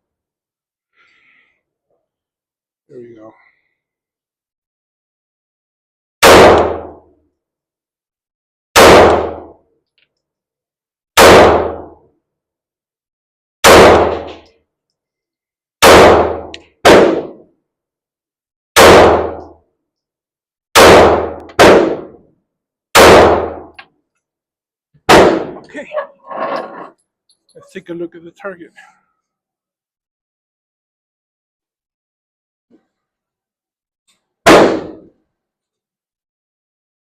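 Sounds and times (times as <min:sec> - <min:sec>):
pistol shots ringing: 0:06.2 - 0:07.0, 0:08.8 - 0:09.5, 0:11.2 - 0:12.0, 0:13.6 - 0:14.4, 0:15.8 - 0:17.4, 0:18.8 - 0:19.6, 0:20.8 - 0:22.2, 0:23.0 - 0:23.8, 0:25.1 - 0:25.6.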